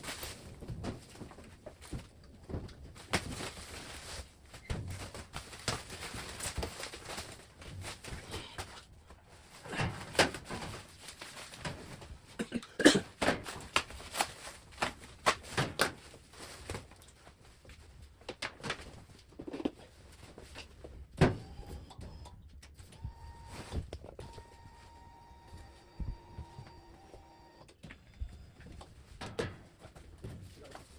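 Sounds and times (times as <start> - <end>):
knocks and thuds of tools: 29.2 - 30.5.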